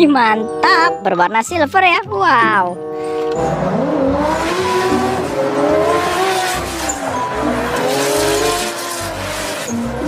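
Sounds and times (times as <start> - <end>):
background music with steady beat: 0.0 - 10.0
race car engine revving: 3.0 - 10.0.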